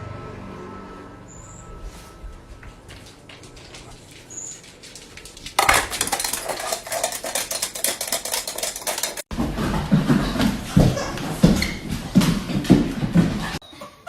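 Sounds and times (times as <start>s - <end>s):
kitchenware clattering: 4.6s - 11.7s.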